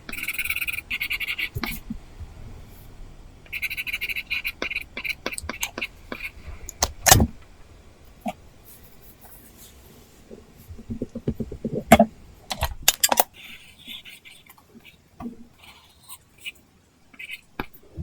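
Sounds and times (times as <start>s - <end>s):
stylus scratching on screen: 3.5s - 6.4s.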